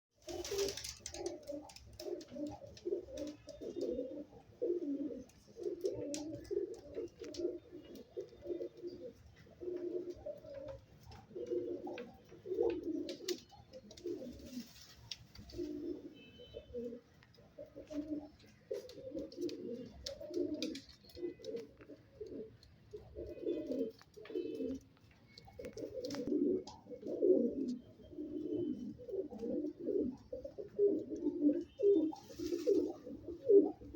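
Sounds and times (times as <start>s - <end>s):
pigeon cooing: 0.3s - 14.7s, 15.4s - 24.9s, 25.5s - 33.9s.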